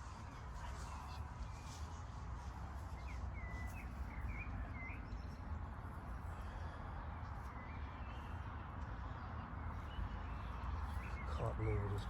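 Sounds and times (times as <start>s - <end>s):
outdoor rumble and hiss: 0.0s - 12.0s
small birds chirping: 7.3s - 12.0s.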